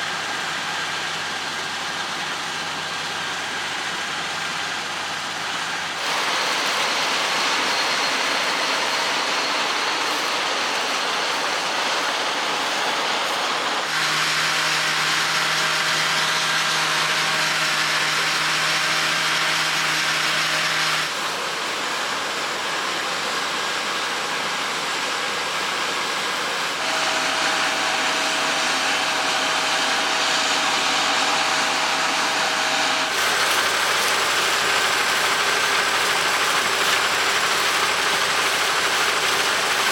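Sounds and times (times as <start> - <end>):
combine harvester running: 0.0 - 39.9
faint machine whines: 6.4 - 13.5, 22.0 - 38.7.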